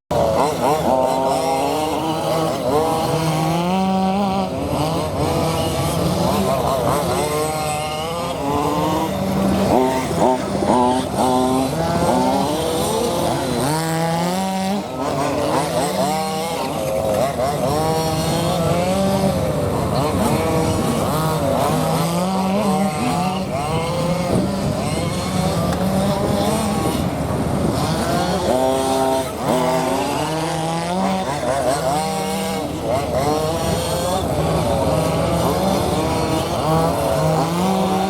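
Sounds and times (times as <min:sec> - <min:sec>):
small petrol engines revving: 0:00.1 - 0:38.0.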